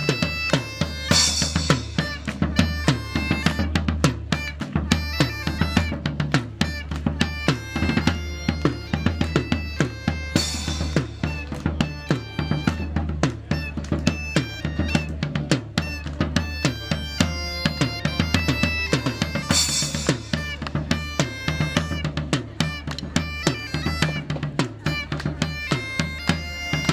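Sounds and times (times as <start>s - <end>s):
high melody line: 0.0s - 3.8s, 15.8s - 26.9s
bagpipe drone: 0.0s - 26.9s
drums in fast rhythm: 0.0s - 26.9s.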